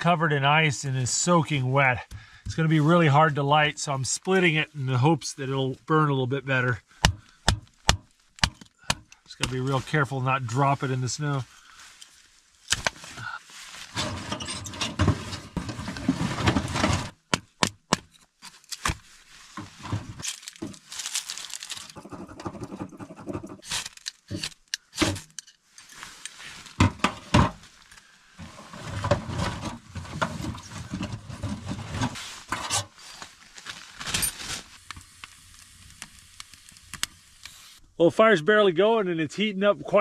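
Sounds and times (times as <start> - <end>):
firewood knocking and clacking: 2.0 - 2.6, 7.0 - 9.2, 21.9 - 23.6.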